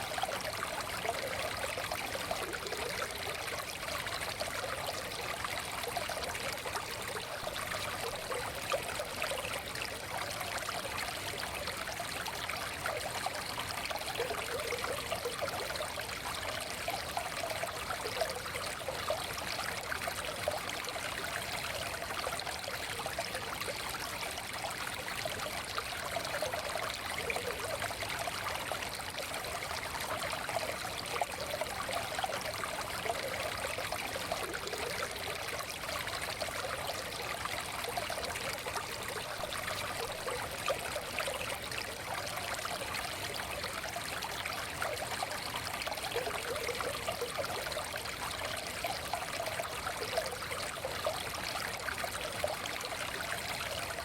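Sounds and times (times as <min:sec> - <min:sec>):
stream babbling over stones: 0:00.0 - 0:54.0.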